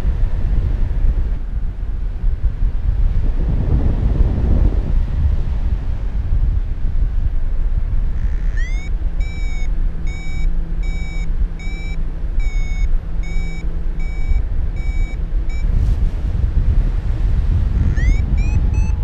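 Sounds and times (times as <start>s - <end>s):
loud low rumble: 1.0s - 19.0s
variometer beeping: 8.1s - 15.8s, 17.7s - 19.0s.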